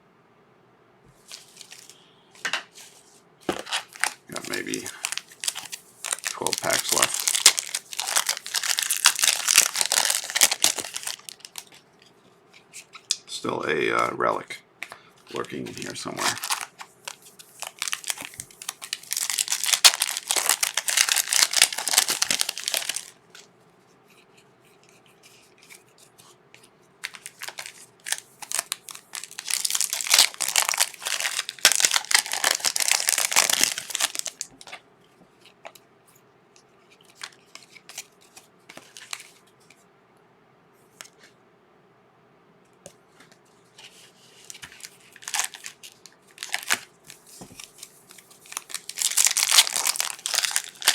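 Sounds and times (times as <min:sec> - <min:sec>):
wrappers tearing and crinkling: 0:03.5 - 0:11.8, 0:15.3 - 0:23.2, 0:27.0 - 0:34.8, 0:37.1 - 0:39.4, 0:44.0 - 0:50.9.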